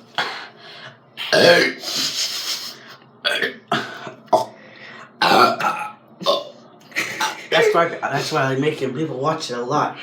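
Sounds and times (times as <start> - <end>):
boy burping: 1.2 - 1.8, 3.2 - 4.5, 5.2 - 6.5.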